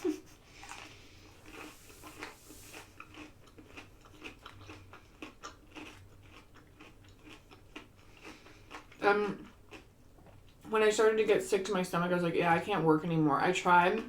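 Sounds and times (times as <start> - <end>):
person chewing food: 0.0 - 10.6.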